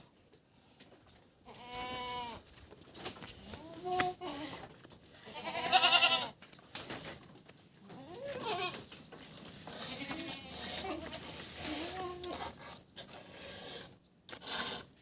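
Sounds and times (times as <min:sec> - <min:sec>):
goat bleating: 0:01.5 - 0:02.4, 0:05.2 - 0:06.4, 0:08.0 - 0:08.9, 0:09.8 - 0:12.6.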